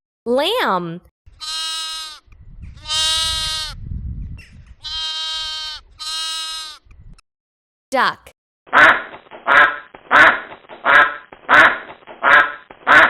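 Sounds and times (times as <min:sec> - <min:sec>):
lamb bleating: 0:01.4 - 0:03.8, 0:04.8 - 0:06.8.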